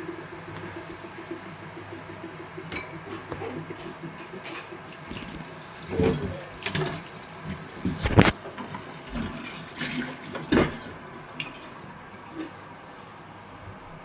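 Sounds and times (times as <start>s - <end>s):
steady hiss: 4.9s - 9.7s.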